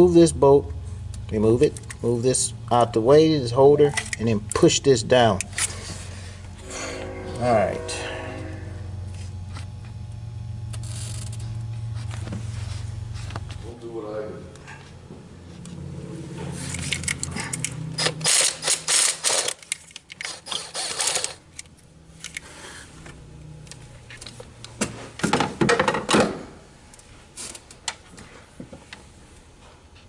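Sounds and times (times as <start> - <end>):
ratchet wrench clicking: 16.8 - 21.4.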